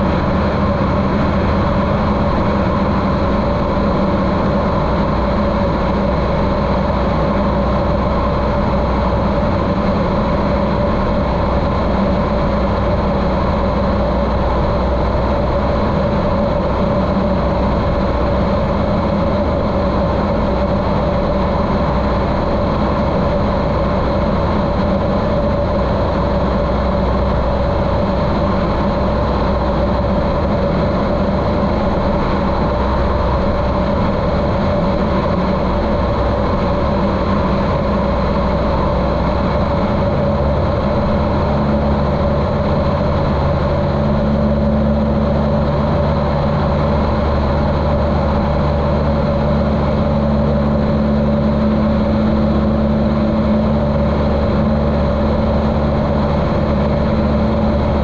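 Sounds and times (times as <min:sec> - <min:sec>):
muffled airplane engine drone: 0:00.0 - 0:58.0.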